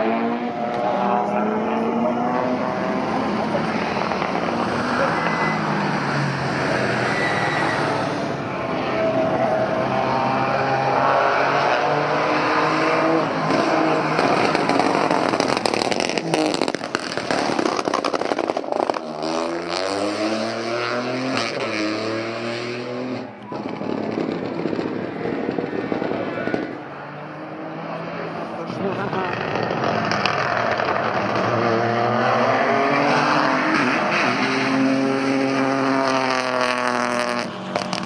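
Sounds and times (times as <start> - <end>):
rally car engine revving: 0.0 - 38.0
exhaust crackles and pops: 13.5 - 19.4, 23.4 - 26.8, 28.7 - 31.5, 37.3 - 38.0.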